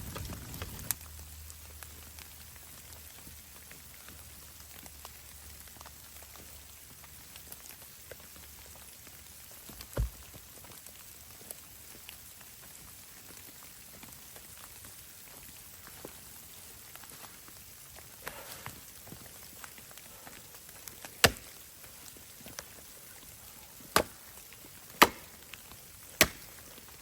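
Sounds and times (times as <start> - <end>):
rain pattering on a surface: 0.0 - 27.0
dull low thump: 9.9 - 10.2.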